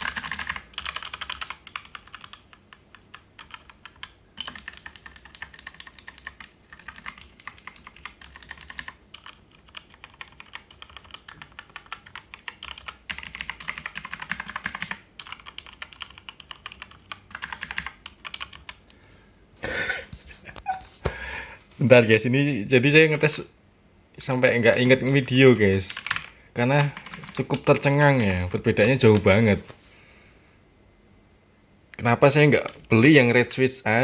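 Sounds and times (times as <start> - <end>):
fast typing on mechanical keyboard: 0.0 - 18.8, 25.8 - 29.3.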